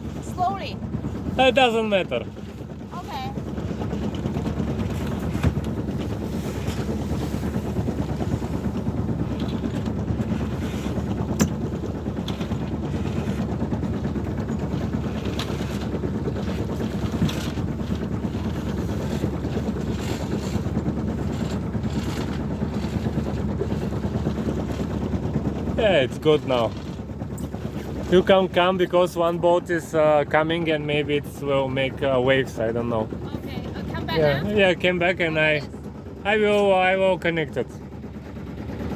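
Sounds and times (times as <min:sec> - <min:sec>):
wind on microphone: 0:00.0 - 0:28.7
boat engine running: 0:00.0 - 0:38.9.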